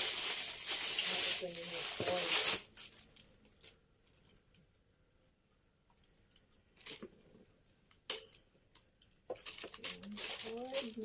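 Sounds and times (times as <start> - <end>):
plastic packaging rustling: 0.0 - 4.5, 9.3 - 11.0.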